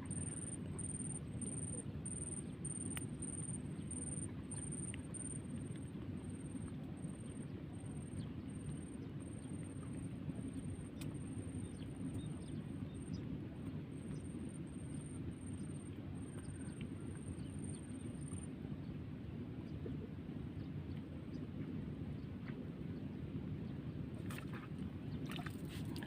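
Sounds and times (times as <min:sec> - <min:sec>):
insect chirping: 0:00.0 - 0:05.6.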